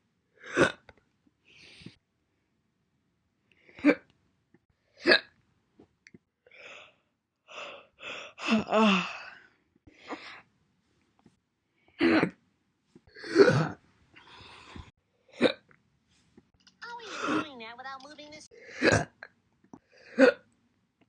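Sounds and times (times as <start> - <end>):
breaths and sighs: 6.4 - 10.5, 13.0 - 15.6
woman hiccuping: 17.1 - 17.4.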